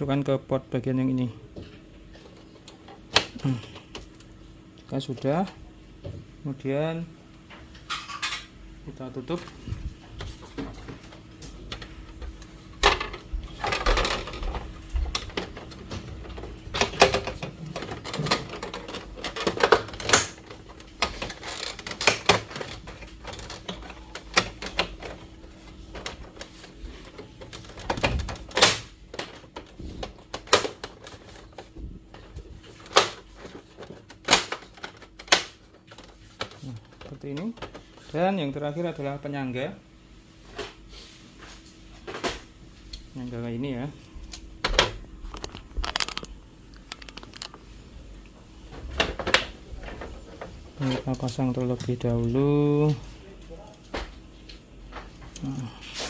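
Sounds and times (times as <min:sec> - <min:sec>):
plastic scraping: 0:45.2 - 0:47.7.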